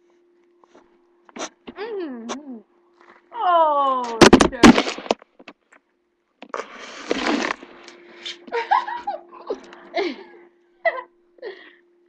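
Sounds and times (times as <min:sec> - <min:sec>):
girls laughing and giggling: 0:08.2 - 0:11.1.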